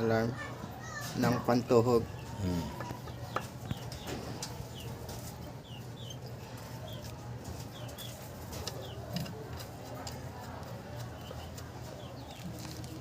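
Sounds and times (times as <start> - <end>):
bird chirping: 1.2 - 9.1.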